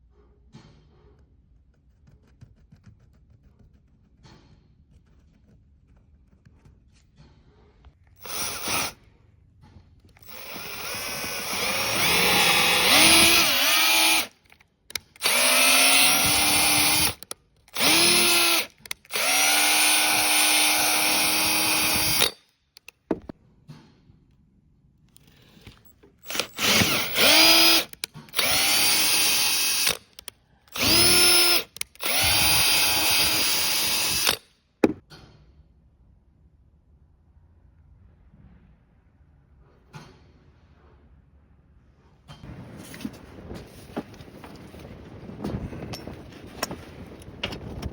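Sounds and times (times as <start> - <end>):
power drill whining: 8.1 - 9.1, 10.1 - 22.4, 25.6 - 34.4.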